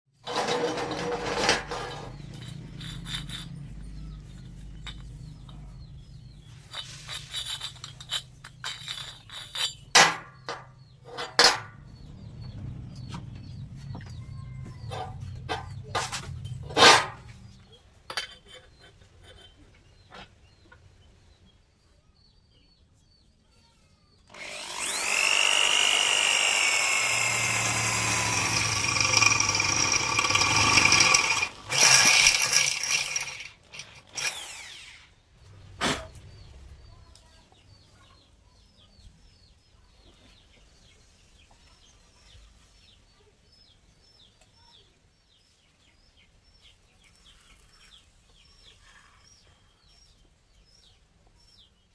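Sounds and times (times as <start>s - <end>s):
electric power tool whining: 24.3s - 35.2s.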